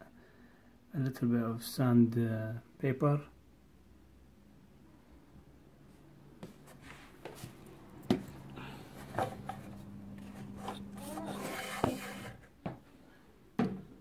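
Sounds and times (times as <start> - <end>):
faint steady hum: 0.0 - 13.9
wood rubbing on work surface: 9.0 - 12.5.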